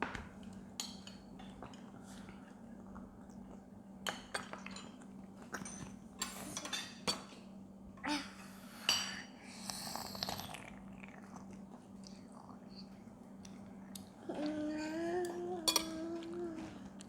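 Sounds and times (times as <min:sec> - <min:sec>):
faint steady hum: 0:00.0 - 0:17.0
utensils clinking against bowls: 0:15.2 - 0:16.4.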